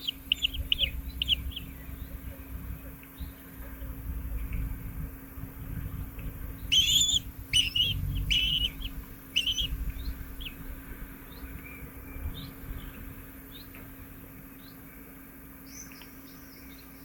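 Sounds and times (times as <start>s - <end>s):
thin bird chirps: 0.0s - 2.2s, 6.6s - 10.6s
harsh bird calls: 0.0s - 3.6s, 5.8s - 13.8s
low rumble: 0.3s - 14.4s.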